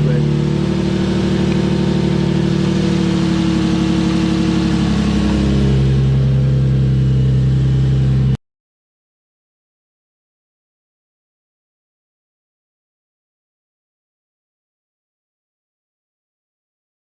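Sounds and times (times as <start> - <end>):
car engine idling: 0.0 - 8.4.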